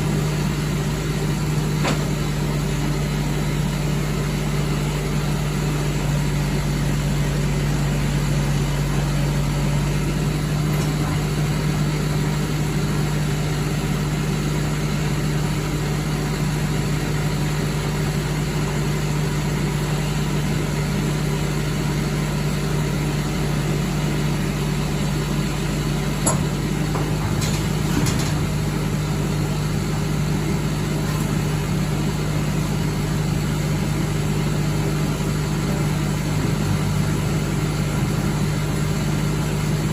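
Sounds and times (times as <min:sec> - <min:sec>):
lorry engine running: 0:00.0 - 0:19.1, 0:19.8 - 0:39.9.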